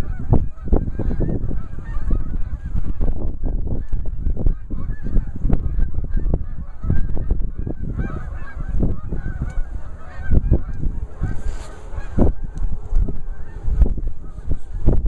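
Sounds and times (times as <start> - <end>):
geese honking: 0.0 - 15.0
wind rumble: 0.0 - 15.0.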